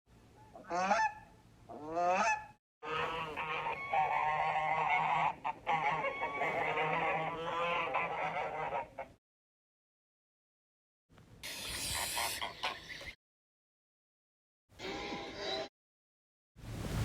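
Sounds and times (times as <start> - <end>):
goose-like honking calls: 0.6 - 9.2.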